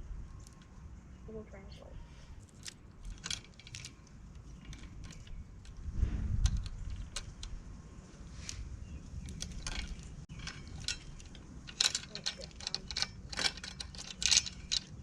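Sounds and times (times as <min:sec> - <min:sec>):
bicycle chain metallic clicks: 0:02.4 - 0:07.6, 0:09.2 - 0:15.0.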